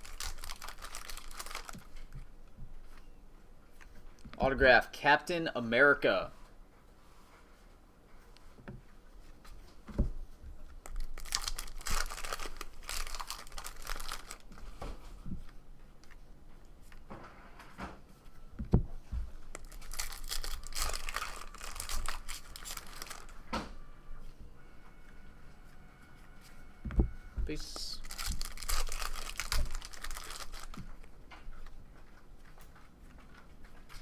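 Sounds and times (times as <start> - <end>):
card packs being torn open: 0.0 - 2.2, 10.8 - 14.6, 19.5 - 23.4, 27.6 - 31.1
foil wrappers crinkling: 0.0 - 2.2, 10.8 - 14.8, 19.4 - 23.4, 27.6 - 31.7.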